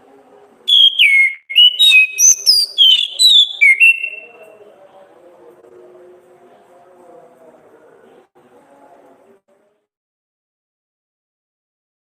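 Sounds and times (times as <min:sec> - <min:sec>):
thrush singing whistled notes: 0:00.7 - 0:04.4.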